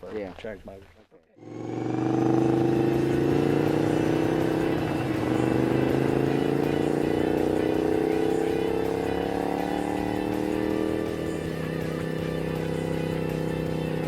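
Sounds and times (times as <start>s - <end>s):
small engine accelerating: 1.4s - 14.0s.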